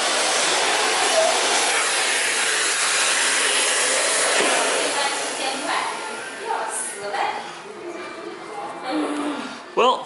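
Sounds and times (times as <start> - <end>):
vacuum cleaner running: 0.0 - 7.3.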